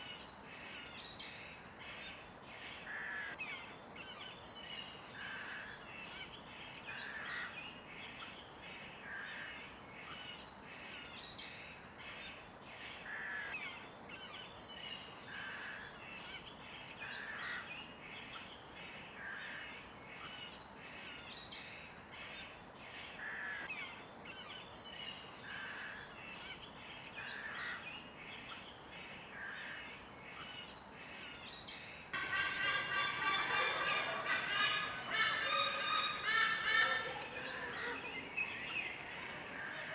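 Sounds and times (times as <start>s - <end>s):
dense chorus of bird song: 0.0s - 39.9s
steady outdoor hiss: 0.0s - 39.9s
small birds chirping: 23.8s - 39.9s.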